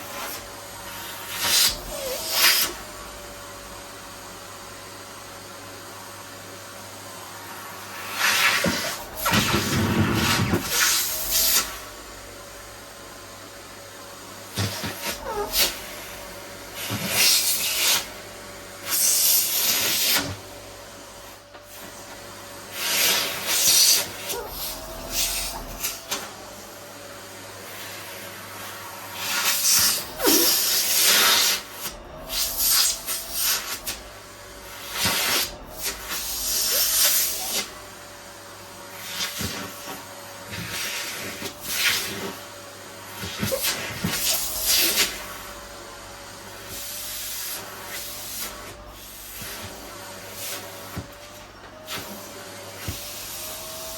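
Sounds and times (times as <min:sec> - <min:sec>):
vacuum cleaner motor whine: 0:00.0 - 0:53.9
hissing suction on fabric: 0:27.7 - 0:37.8.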